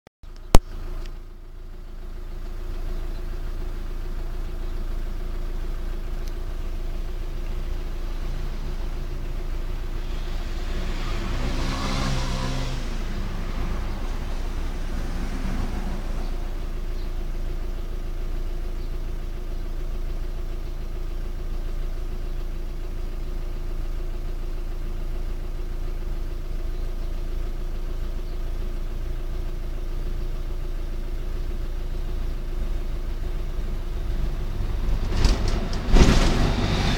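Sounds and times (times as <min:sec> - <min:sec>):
diesel engine starting and idling: 0:00.3 - 0:36.9
engine revving: 0:06.2 - 0:17.7, 0:33.2 - 0:36.9.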